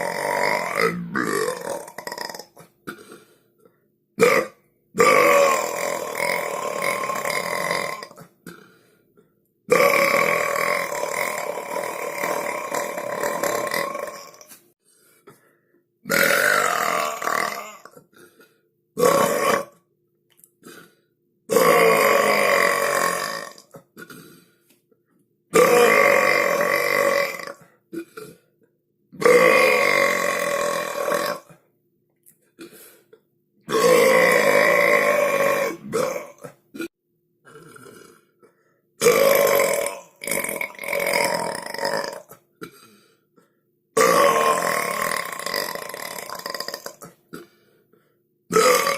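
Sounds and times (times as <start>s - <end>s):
loud human belches: 0.0s - 3.2s, 4.2s - 8.8s, 9.7s - 14.6s, 16.0s - 18.4s, 19.0s - 19.8s, 21.5s - 24.5s, 25.5s - 28.5s, 29.2s - 31.6s, 33.6s - 38.4s, 39.0s - 43.0s, 44.0s - 47.6s, 48.5s - 48.9s.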